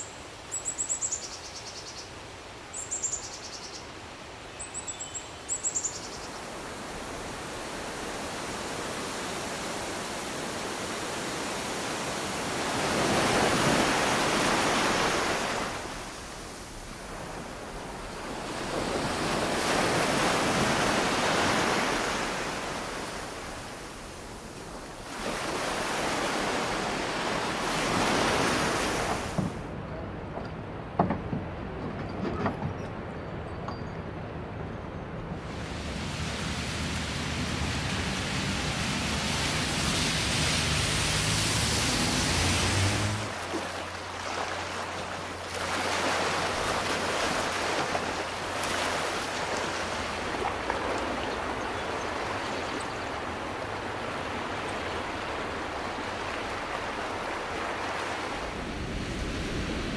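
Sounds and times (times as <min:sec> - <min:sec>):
ocean surf washing in: 0:06.4 - 0:29.7, 0:35.4 - 0:59.9.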